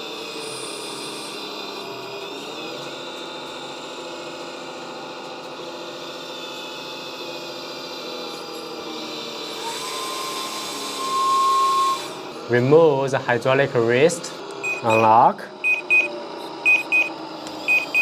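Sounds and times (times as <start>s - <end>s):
hydraulic pump whine: 0.0s - 18.0s.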